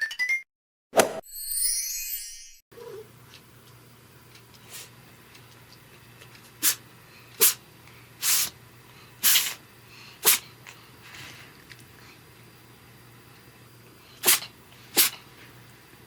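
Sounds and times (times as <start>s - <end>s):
cat sneezing: 6.6s - 6.8s, 7.4s - 7.6s, 8.2s - 8.6s, 9.2s - 9.6s, 10.2s - 10.6s, 14.2s - 15.3s.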